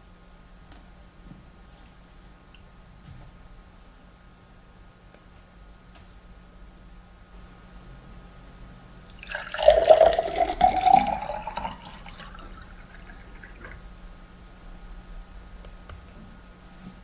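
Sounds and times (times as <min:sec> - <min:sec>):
liquid pouring into container: 0:09.1 - 0:13.9
water drips: 0:09.1 - 0:13.9.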